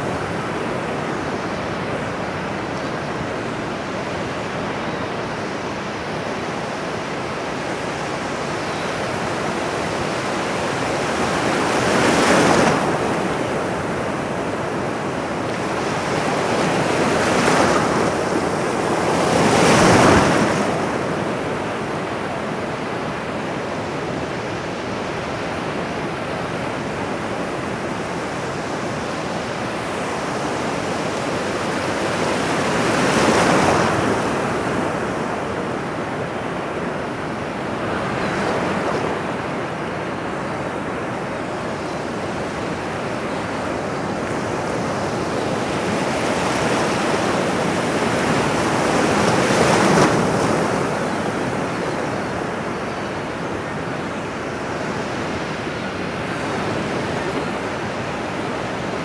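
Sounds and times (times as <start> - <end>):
ocean surf washing: 0.0 - 59.0.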